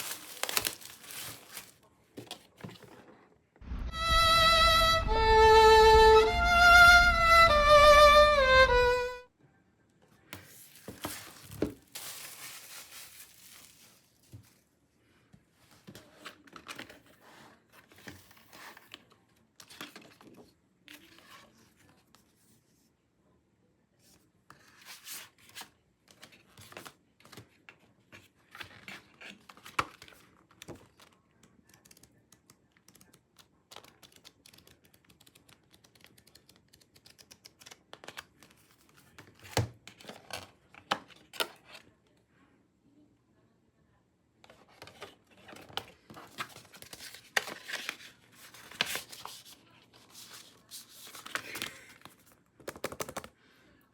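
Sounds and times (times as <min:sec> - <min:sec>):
plastic wrapping tearing and crinkling: 0:00.0 - 0:01.8, 0:10.6 - 0:14.4.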